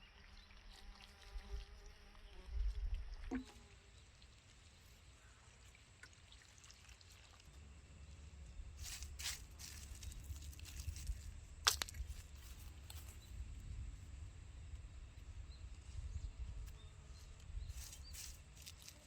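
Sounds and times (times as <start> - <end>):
small clicks and rustles: 17.4 - 19.0.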